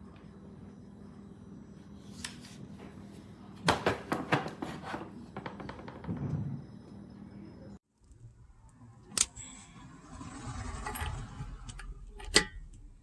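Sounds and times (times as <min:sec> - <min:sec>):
hard objects knocking and clattering: 0:03.6 - 0:06.4.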